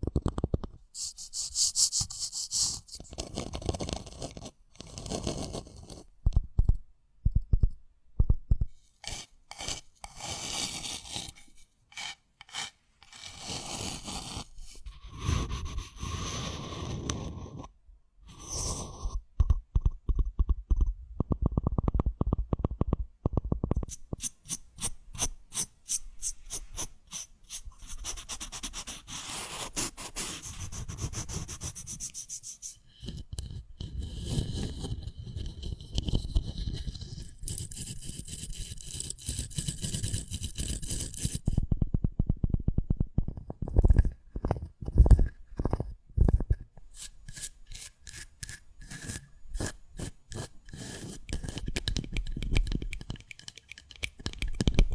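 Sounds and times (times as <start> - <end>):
sharp clicks and taps: 0.0 - 0.9, 6.2 - 8.8, 19.4 - 24.4, 50.3 - 54.9
hands rubbing and scratching object: 0.0 - 6.2, 9.0 - 17.7, 18.3 - 41.6, 43.6 - 54.9.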